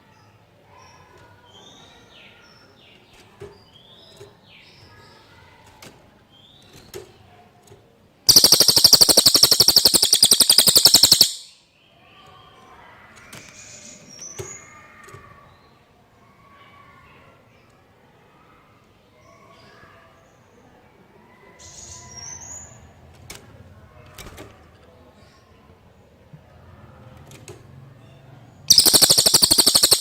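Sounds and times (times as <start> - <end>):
songbird chirping and whistling: 8.3 - 11.6, 28.7 - 30.0
high-pitched bird trill: 8.3 - 11.7, 28.7 - 30.0.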